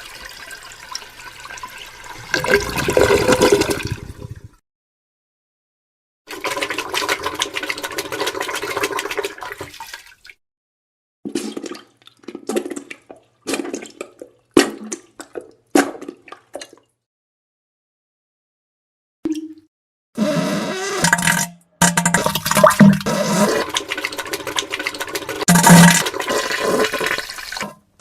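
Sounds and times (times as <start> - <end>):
wet spluttering fart sounds: 20.2 - 27.7.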